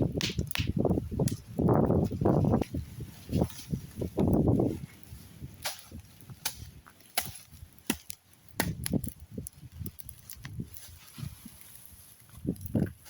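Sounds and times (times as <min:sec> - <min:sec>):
blade chopping grass: 0:05.6 - 0:09.0.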